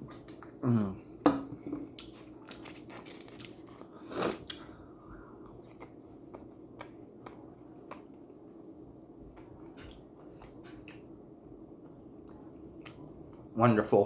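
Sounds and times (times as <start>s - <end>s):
person chewing with lip smacks: 1.9s - 4.7s, 5.4s - 8.3s, 9.3s - 11.1s.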